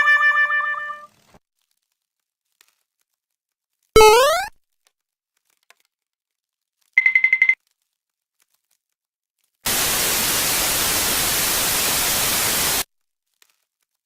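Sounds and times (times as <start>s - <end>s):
static hiss: 9.7s - 12.8s.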